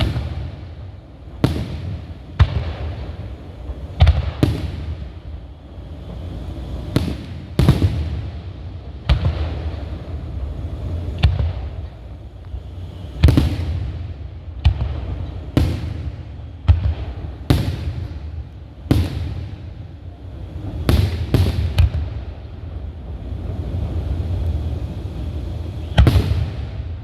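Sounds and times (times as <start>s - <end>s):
firework shells bursting: 0.0s - 22.7s, 23.3s - 27.0s.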